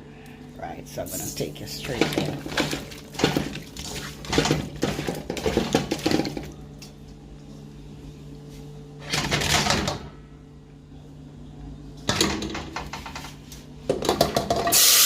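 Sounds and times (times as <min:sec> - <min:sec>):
low steady hum: 0:00.0 - 0:14.7
pots and utensils clattering: 0:01.8 - 0:06.5.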